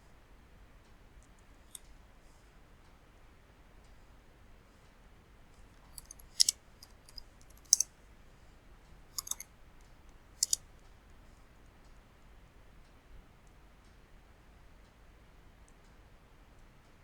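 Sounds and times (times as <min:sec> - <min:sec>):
computer mouse clicks: 0:06.0 - 0:06.5, 0:07.6 - 0:07.8, 0:09.2 - 0:09.4.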